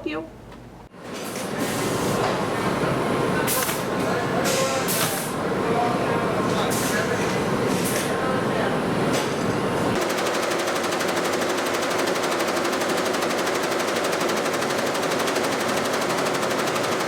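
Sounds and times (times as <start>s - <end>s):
embroidery machine stitching: 10.0s - 17.0s.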